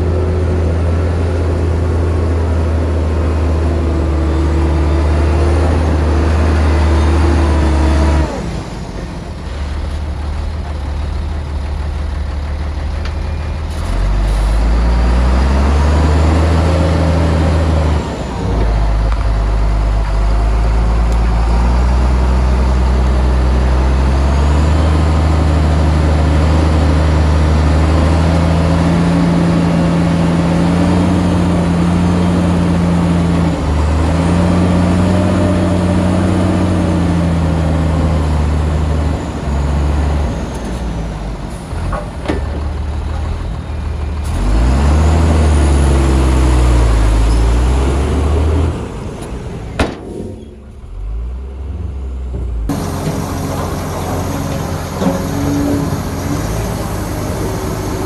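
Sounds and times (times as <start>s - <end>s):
diesel engine revving: 0.0s - 58.0s
sharp knocks: 49.8s - 50.4s.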